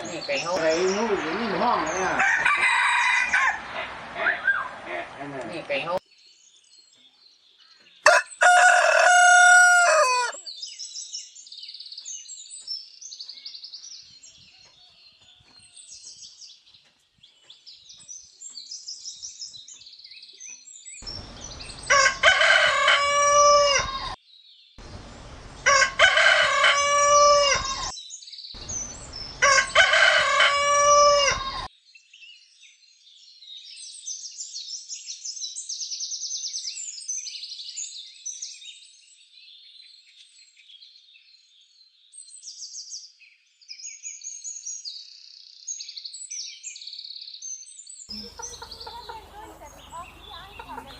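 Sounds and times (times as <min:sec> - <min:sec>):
small birds chirping: 0:00.0 - 0:50.9
rooster crowing: 0:02.1 - 0:03.9, 0:08.0 - 0:10.4, 0:21.8 - 0:24.2, 0:25.6 - 0:27.9, 0:29.4 - 0:31.7.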